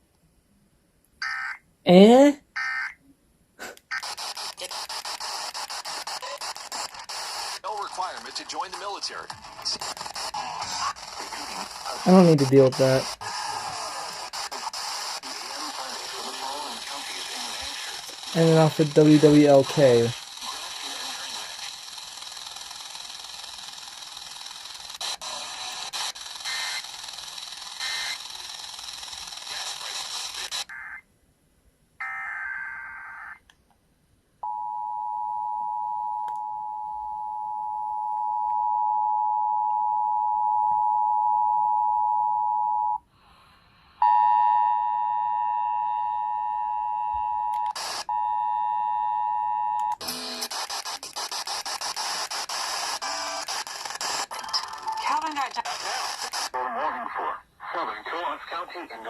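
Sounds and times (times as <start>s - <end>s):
radio static hiss: 3.6s - 30.7s, 47.7s - 48.1s, 50.0s - 59.0s
click: 36.2s - 36.4s.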